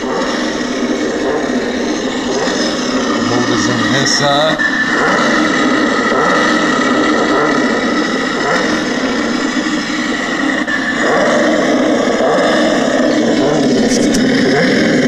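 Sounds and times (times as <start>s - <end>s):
toy car electric motor whine: 0.0s - 15.0s.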